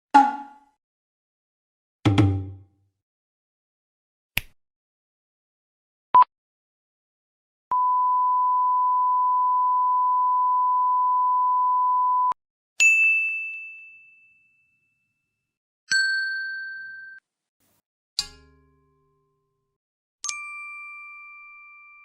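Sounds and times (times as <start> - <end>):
bell dings: 12.8 - 15.2, 15.9 - 17.2.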